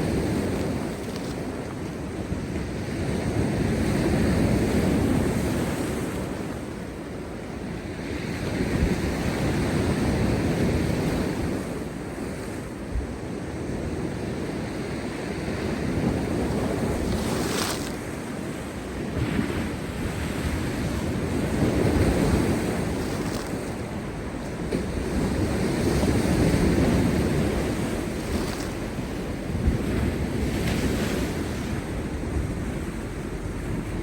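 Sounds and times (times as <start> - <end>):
surf breaking on rocks: 15.8 - 34.0.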